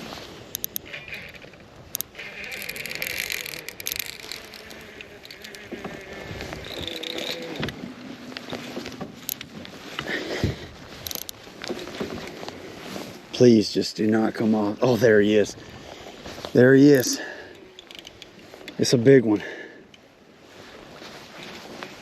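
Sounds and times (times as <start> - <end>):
reel whining: 0.0 - 13.5, 16.6 - 18.9
fishing reel drag clicking: 0.4 - 7.8, 11.0 - 11.4, 17.5 - 18.8.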